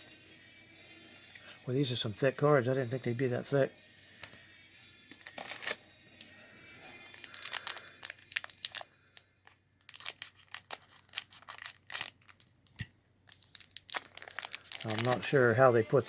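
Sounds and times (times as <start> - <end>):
foil wrapper crinkling: 5.1 - 5.9, 6.8 - 15.6.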